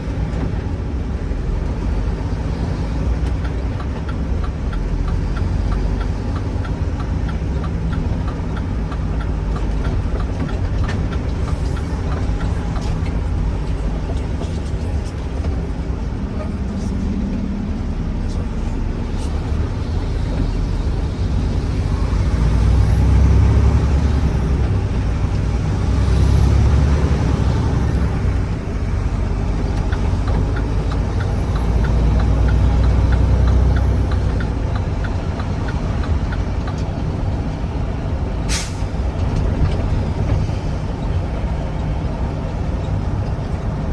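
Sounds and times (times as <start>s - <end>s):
truck diesel engine pulling: 0.0s - 43.9s
turn signal ticking: 0.1s - 43.9s
air brake hiss: 38.5s - 38.9s.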